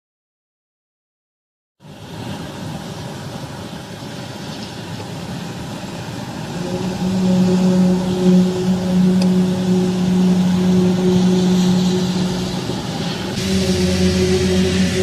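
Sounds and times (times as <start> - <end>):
noisy background: 6.2 - 15.0
low droning tone: 6.4 - 15.0.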